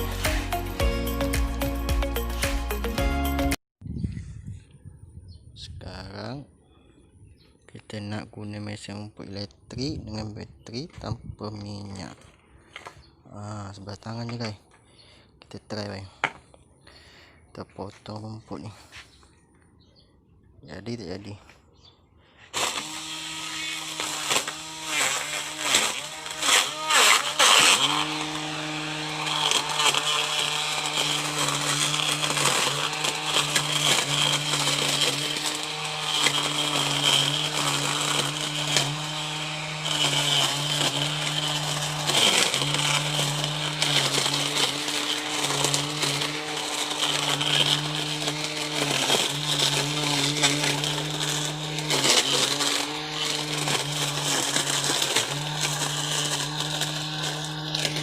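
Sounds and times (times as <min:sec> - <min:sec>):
grass cutter motor whining: 0:00.0 - 0:03.6, 0:22.2 - 0:58.0.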